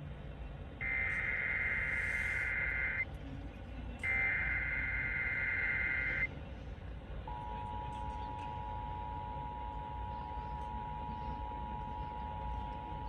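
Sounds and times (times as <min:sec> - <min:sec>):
radio hiss: 0:00.8 - 0:03.0, 0:04.0 - 0:06.3.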